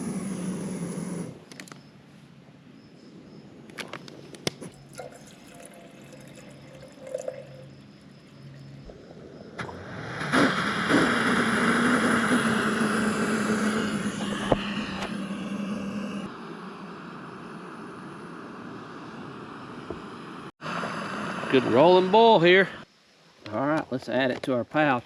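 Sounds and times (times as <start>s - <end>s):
low hum: 4.7s - 22.1s
stove burner hissing: 9.6s - 16.3s.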